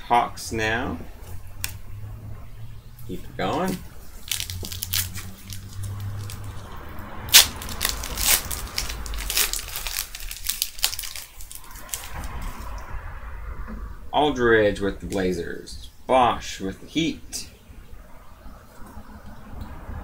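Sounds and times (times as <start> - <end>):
foil wrapper tearing and crinkling: 4.1 - 6.6, 7.3 - 12.2.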